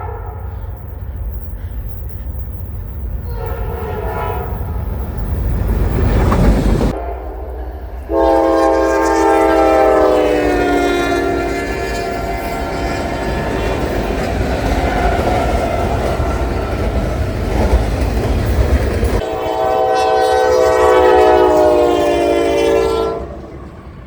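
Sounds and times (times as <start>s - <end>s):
locomotive air horn: 0.0s - 0.8s, 3.2s - 4.7s, 6.9s - 13.9s, 19.2s - 23.6s
train wheels clattering on rails: 0.0s - 7.0s, 9.7s - 19.8s
train rumble: 0.0s - 24.0s.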